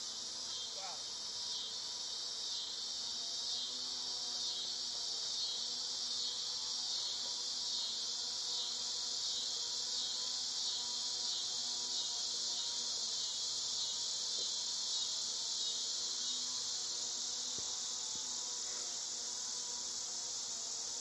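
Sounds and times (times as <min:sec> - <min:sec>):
high-pitched insect chorus: 0:00.0 - 0:21.0
honeybee swarm humming: 0:00.0 - 0:21.0.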